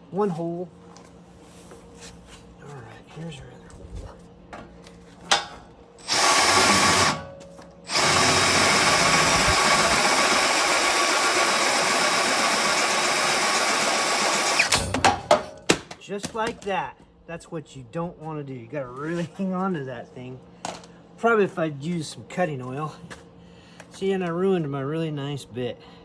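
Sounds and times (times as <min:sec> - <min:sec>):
cordless drill boring into steel: 0:06.0 - 0:07.3, 0:07.9 - 0:14.8
drill bit snapping: 0:06.0 - 0:07.3, 0:07.9 - 0:14.9.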